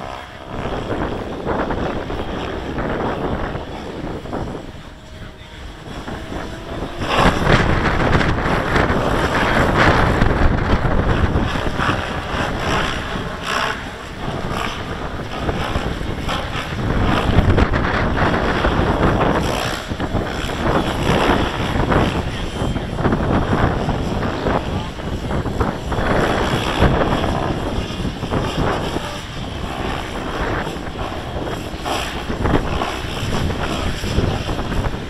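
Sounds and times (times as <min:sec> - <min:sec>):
rc helicopter rotor and motor: 0:00.0 - 0:35.0
wind buffeting microphone: 0:00.0 - 0:35.0.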